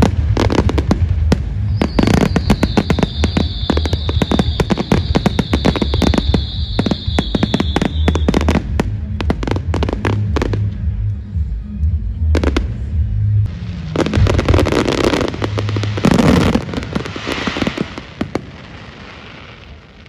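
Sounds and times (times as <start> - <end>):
fireworks crackling bangs: 0.0 - 11.0, 13.5 - 20.0
high firework whistle: 1.5 - 8.8, 13.6 - 19.8.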